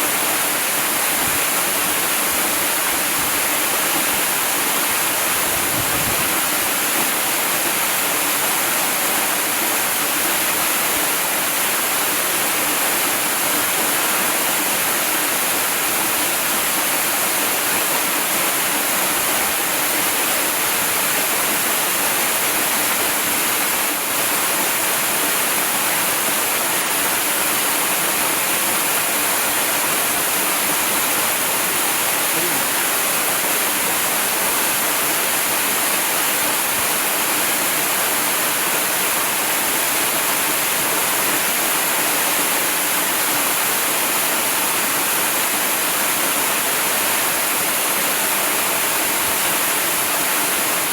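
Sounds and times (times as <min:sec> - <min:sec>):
waterfall rushing: 0:00.0 - 0:50.9.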